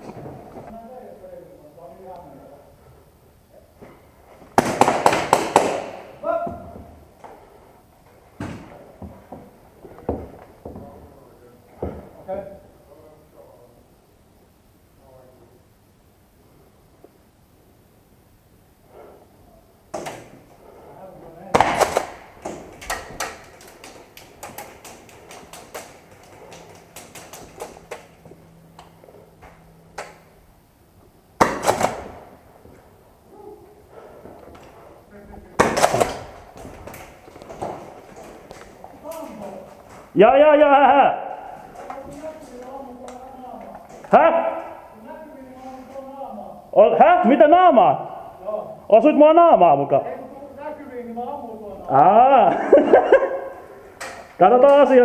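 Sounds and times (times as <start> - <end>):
airsoft guns firing: 4.5 - 6.3, 21.4 - 29.0, 31.4 - 32.5, 35.5 - 38.7.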